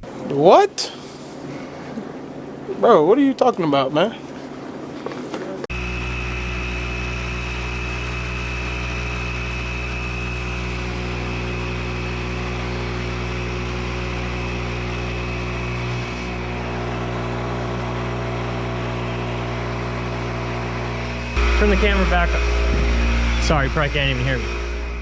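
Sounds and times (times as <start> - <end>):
air compressor running: 5.7 - 25.0.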